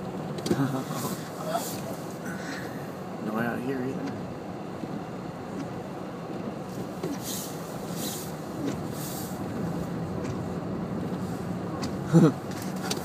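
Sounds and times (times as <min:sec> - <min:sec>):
vehicle cabin running noise: 0:00.0 - 0:13.0
short hissing swishes: 0:07.1 - 0:09.4.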